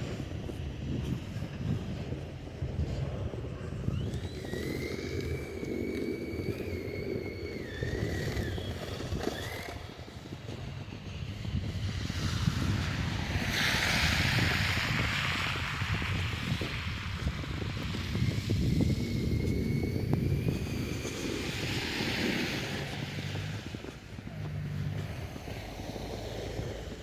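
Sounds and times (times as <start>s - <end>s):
wind on microphone: 0.0s - 27.0s
city street traffic: 8.0s - 27.0s.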